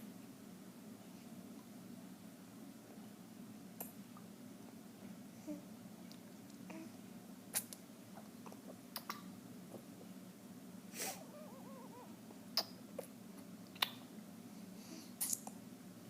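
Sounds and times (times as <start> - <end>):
faint squeaky tones: 11.1 - 12.2.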